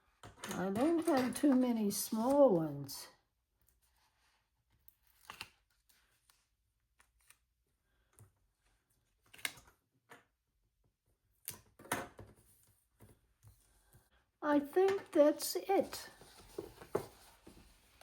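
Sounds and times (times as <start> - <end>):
paper pages rustling: 15.8 - 18.0.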